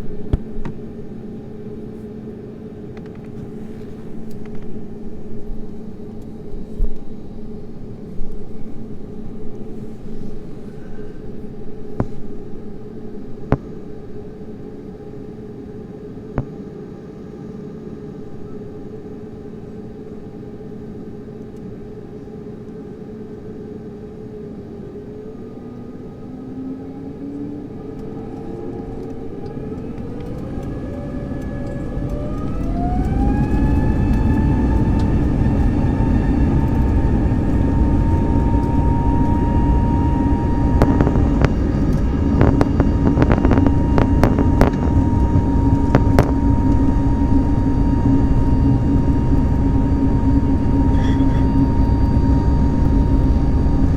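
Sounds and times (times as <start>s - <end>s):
jet engines spooling up: 24.7s - 53.9s.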